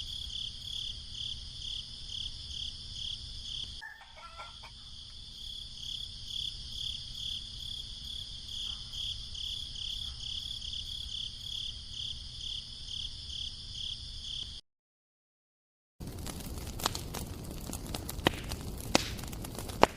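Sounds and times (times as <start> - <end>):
crickets chirping: 0.0 - 14.6
high insect trill: 0.0 - 14.6.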